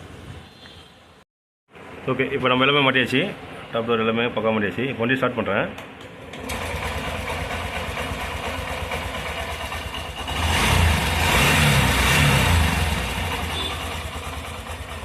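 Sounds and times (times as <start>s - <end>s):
motorcycle engine starting and idling: 6.0s - 15.0s.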